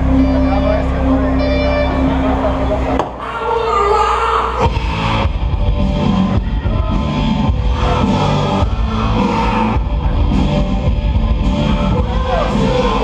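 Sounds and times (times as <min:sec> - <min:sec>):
drum kit: 0:04.6 - 0:13.0.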